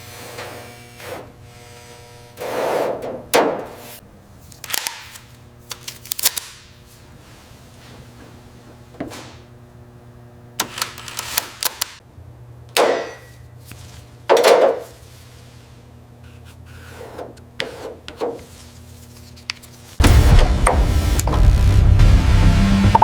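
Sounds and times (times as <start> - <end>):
music: 20.0 - 23.0.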